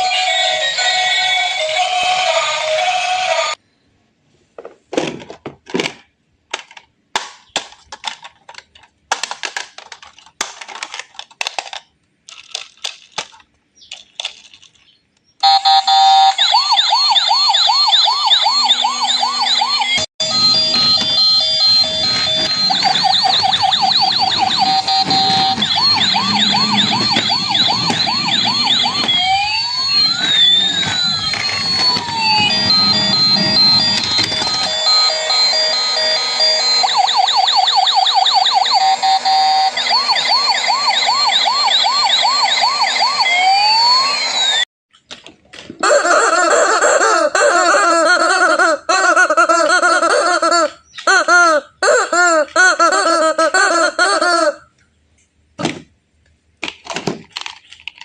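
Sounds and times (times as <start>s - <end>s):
toy electronic siren warbling: 0.0s - 3.5s, 15.4s - 44.6s, 45.8s - 54.3s
electronic beeping tones: 18.1s - 38.2s.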